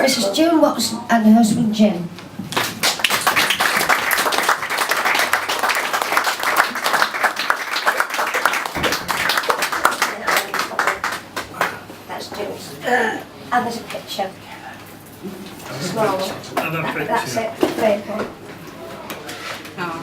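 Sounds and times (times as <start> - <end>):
audience applauding: 2.5 - 11.9.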